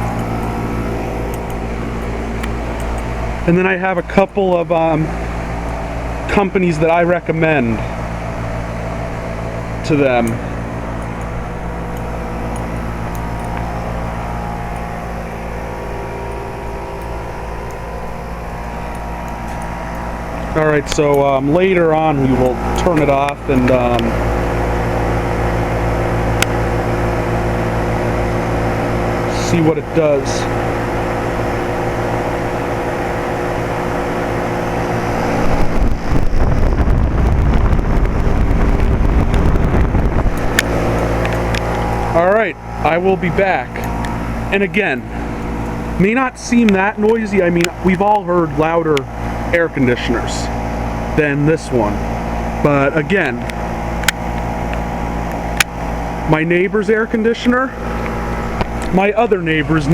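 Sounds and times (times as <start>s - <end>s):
air conditioner unit humming: 0.0s - 59.9s
low rumble: 35.4s - 46.6s.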